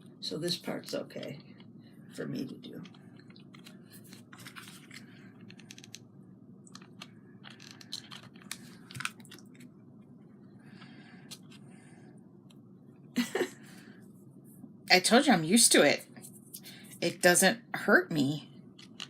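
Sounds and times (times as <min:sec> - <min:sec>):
low room hum: 0:00.0 - 0:19.0
small clicks and scratches: 0:02.7 - 0:10.2, 0:18.7 - 0:19.0.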